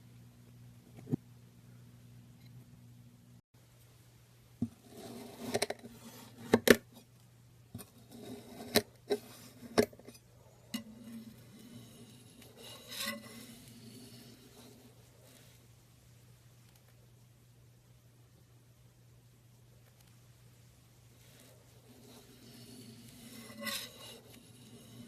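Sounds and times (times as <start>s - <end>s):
sand scraping rasp: 10.8s - 14.9s, 21.3s - 25.0s.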